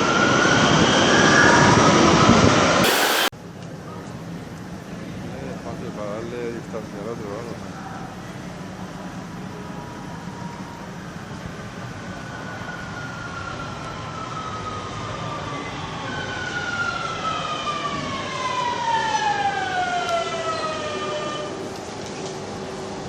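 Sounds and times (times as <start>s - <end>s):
electric train motors whining: 2.8s - 3.3s.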